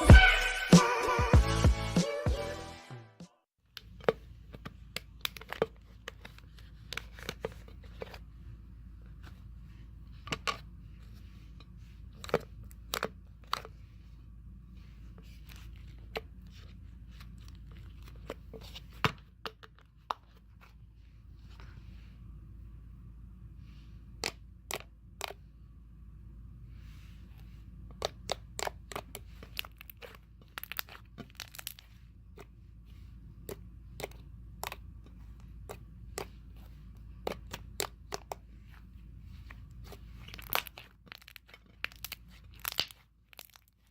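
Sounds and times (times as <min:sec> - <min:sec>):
low steady hum: 0:03.6 - 0:43.9
slime squishing and crackling: 0:27.9 - 0:32.5, 0:33.4 - 0:43.9.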